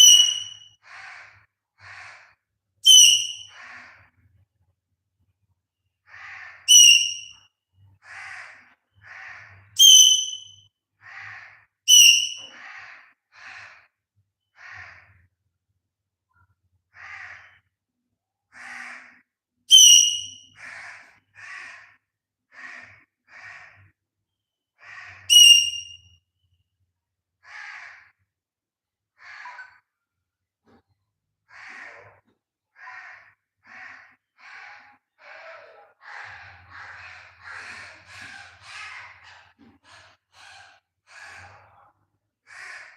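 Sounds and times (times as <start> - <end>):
parrot squawking: 0.0 - 0.7, 2.8 - 3.6, 6.2 - 7.4, 9.8 - 10.6, 11.9 - 12.6, 19.7 - 20.8, 25.2 - 26.0, 35.7 - 41.4
parrot screeching: 0.0 - 1.1, 2.9 - 3.7, 6.2 - 7.4, 9.1 - 10.6, 11.9 - 12.9, 19.7 - 20.8, 24.8 - 26.0, 35.9 - 39.5.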